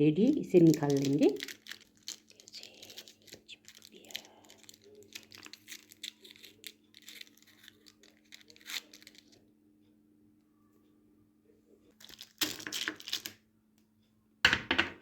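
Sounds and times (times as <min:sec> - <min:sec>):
paper crinkling and crackling: 0:00.3 - 0:09.4, 0:11.9 - 0:13.4.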